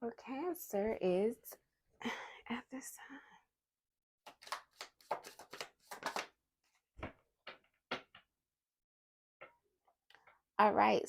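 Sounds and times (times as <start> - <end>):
cards shuffling and snapping: 4.3 - 6.4.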